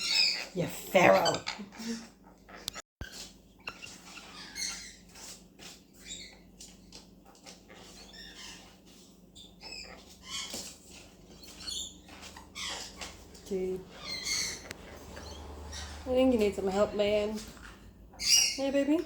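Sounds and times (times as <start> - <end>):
bird squeaking: 0.0 - 2.8, 9.4 - 16.9, 18.2 - 18.9.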